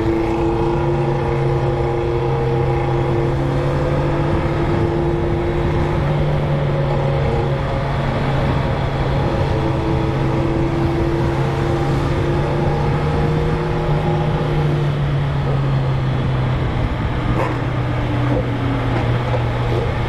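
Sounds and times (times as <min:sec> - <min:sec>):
loud motorcycle engines: 0:00.0 - 0:20.0.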